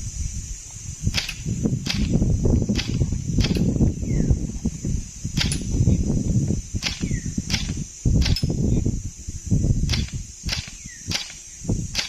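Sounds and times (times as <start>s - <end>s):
airsoft gun shots: 1.1s - 3.7s, 9.9s - 12.0s.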